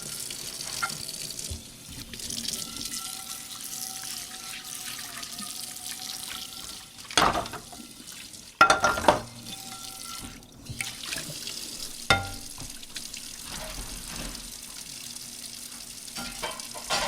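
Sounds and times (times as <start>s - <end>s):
tap water running: 0.0s - 17.0s
dishes clattering: 7.2s - 7.8s, 8.6s - 11.4s, 12.0s - 14.5s, 16.2s - 17.0s.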